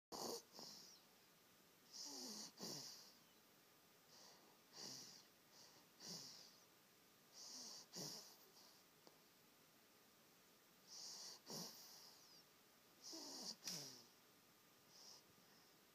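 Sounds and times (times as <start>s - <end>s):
baby snoring softly: 0.1s - 1.0s, 1.8s - 3.2s, 4.1s - 6.7s, 7.3s - 8.8s, 10.9s - 12.4s, 13.0s - 14.2s.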